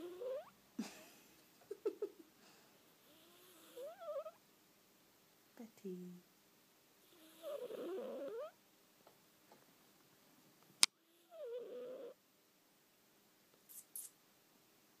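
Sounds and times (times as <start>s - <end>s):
cat vocal noises: 0.0s - 0.5s, 3.0s - 4.4s, 7.1s - 8.6s, 11.0s - 12.2s.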